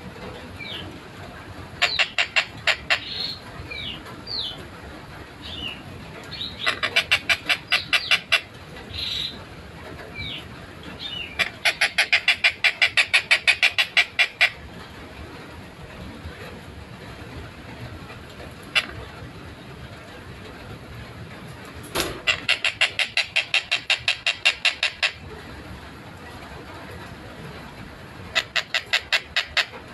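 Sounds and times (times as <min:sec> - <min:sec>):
kingfisher harsh kek calls: 0:01.8 - 0:03.1, 0:22.2 - 0:25.2, 0:28.4 - 0:29.8.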